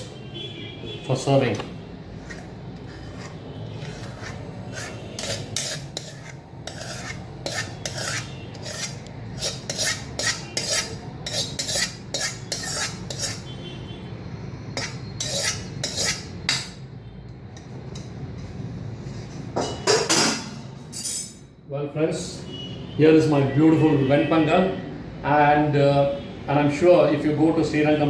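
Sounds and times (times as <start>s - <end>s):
ladle scraping metal pan: 2.1s - 13.5s, 14.7s - 16.6s.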